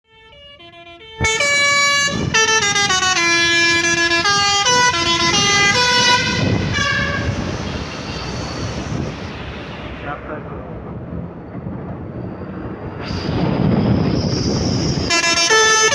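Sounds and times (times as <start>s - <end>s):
multi-tone air horn tune: 0.1s - 8.0s, 14.8s - 15.9s
noisy rush: 1.2s - 15.9s.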